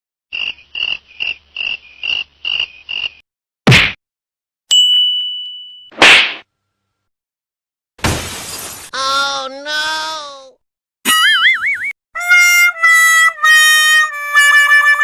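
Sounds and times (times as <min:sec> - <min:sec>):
hard smack: 0:03.7 - 0:04.0, 0:06.0 - 0:06.4
bright bell ding: 0:04.7 - 0:05.9.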